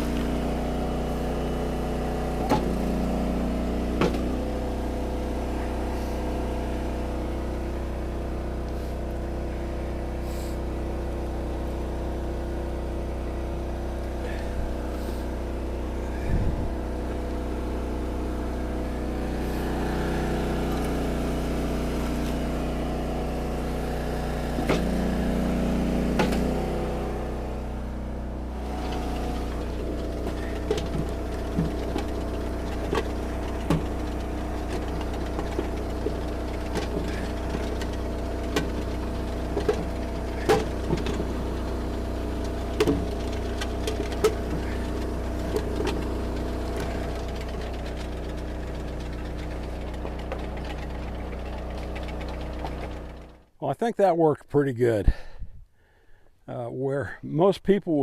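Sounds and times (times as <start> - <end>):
log splitter engine running: 0.0 - 53.6
wood cracking and splitting: 28.5 - 53.5.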